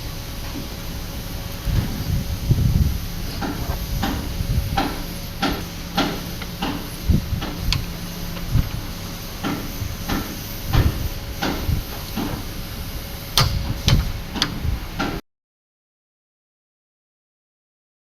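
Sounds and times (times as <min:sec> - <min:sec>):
steady noise bed: 0:00.0 - 0:15.2
sharp metal knocks and clicks: 0:13.4 - 0:15.1.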